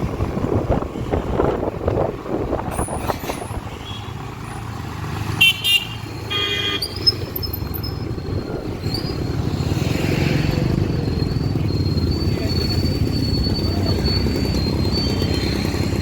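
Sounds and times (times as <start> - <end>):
rumble of engines and road noise: 0.0 - 16.0
car horns honking: 5.3 - 7.2.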